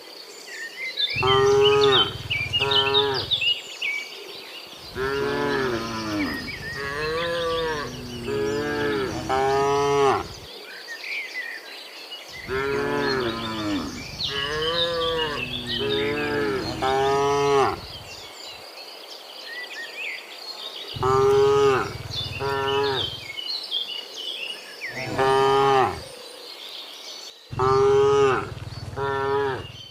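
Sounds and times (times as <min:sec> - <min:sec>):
cows mooing: 0:01.2 - 0:03.5, 0:04.9 - 0:10.5, 0:12.4 - 0:18.2, 0:21.0 - 0:23.4, 0:24.9 - 0:26.1, 0:27.5 - 0:29.9.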